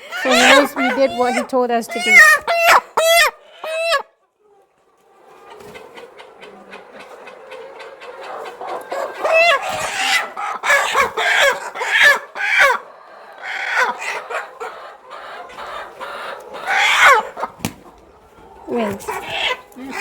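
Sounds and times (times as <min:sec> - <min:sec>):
chickens squawking and clucking: 0:00.0 - 0:20.0.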